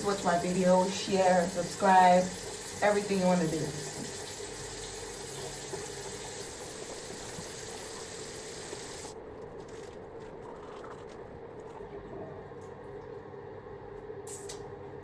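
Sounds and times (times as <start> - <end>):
water running from a tap: 0.0 - 9.1.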